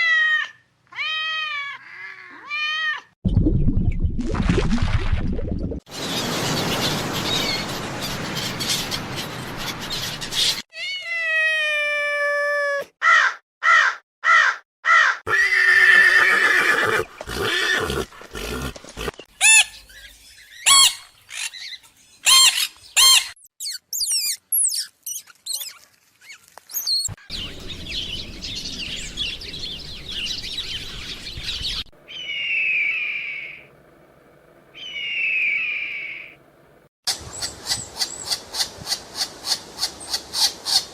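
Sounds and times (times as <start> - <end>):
sharp bird-like chirps: 19.5 - 25.8.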